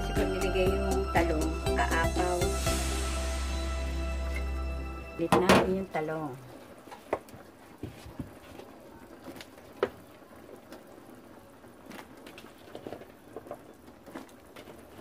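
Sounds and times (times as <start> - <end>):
curry bubbling in a pot: 6.0 - 15.0.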